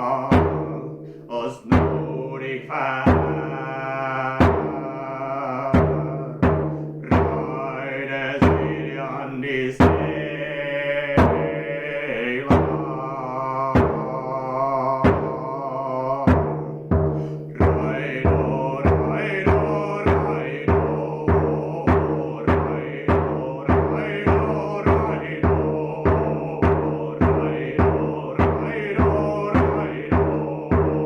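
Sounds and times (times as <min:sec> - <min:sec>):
droning chanted vocal: 0:00.0 - 0:16.7, 0:17.5 - 0:31.0
hand drum beat: 0:00.3 - 0:01.0, 0:01.6 - 0:02.3, 0:04.4 - 0:05.0, 0:05.7 - 0:07.7, 0:09.8 - 0:10.4, 0:11.2 - 0:11.7, 0:12.5 - 0:13.0, 0:13.8 - 0:14.2, 0:15.0 - 0:15.5, 0:16.3 - 0:31.0.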